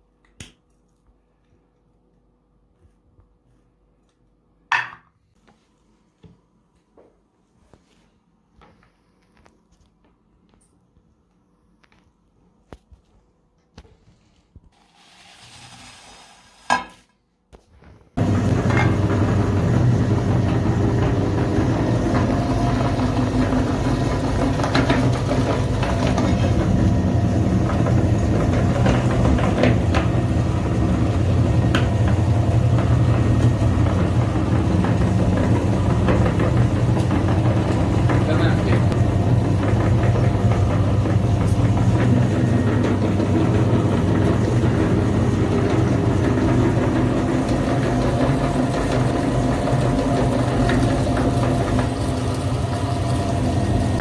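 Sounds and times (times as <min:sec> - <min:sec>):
electric grinder running: 0:18.2 - 0:54.0.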